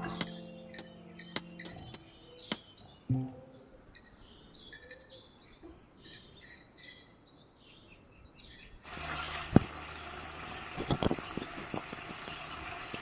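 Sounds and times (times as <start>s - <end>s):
sharp click: 0.0s - 2.6s
small birds twittering: 0.0s - 8.8s.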